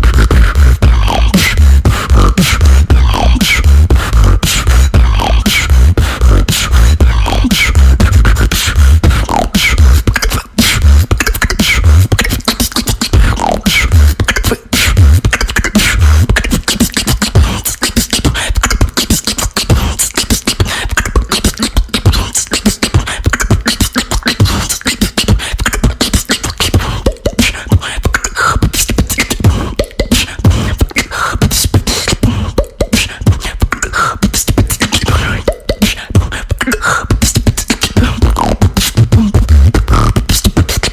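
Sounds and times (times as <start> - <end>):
deep bass pulses: 0.0 - 16.4, 38.0 - 40.3
person beatboxing: 0.0 - 40.9
short pitched vocal sounds: 0.0 - 40.9.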